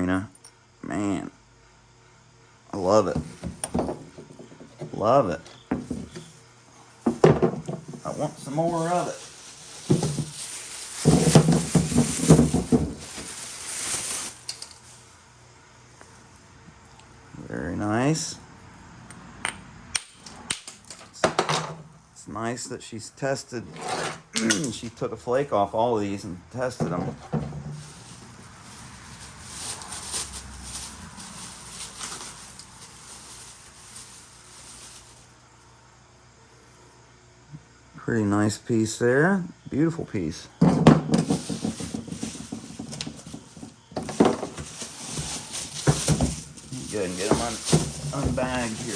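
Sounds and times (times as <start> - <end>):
packing material rustling: 7.9 - 15.0, 27.7 - 35.3, 41.2 - 48.9.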